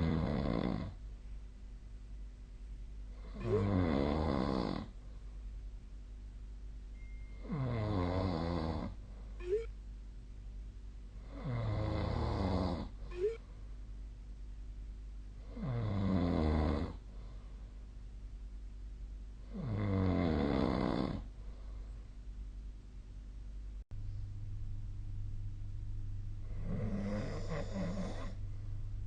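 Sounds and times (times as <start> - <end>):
person snoring: 0.0 - 1.0, 3.2 - 5.0, 7.4 - 9.7, 11.2 - 13.4, 15.4 - 17.0, 19.5 - 21.3, 26.4 - 28.4
short high squeak: 9.4 - 9.7, 13.1 - 13.4.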